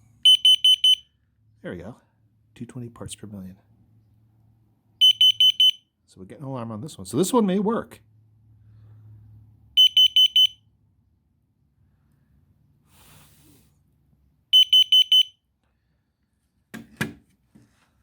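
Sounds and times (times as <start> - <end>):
shrill alarm beeps: 0.2 - 1.2, 5.0 - 5.9, 9.8 - 10.6, 14.5 - 15.4.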